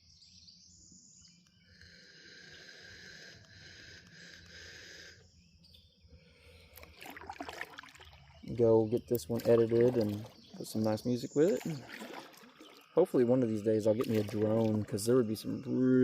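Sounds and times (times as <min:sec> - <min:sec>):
faint creek: 0:06.6 - 0:16.0.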